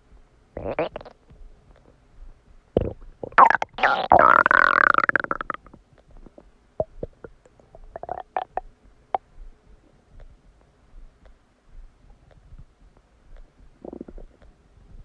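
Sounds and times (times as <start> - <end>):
stomach gurgling: 0.6 - 1.2, 2.8 - 9.2, 13.8 - 15.0
faint pops and bubbles: 2.8 - 9.3.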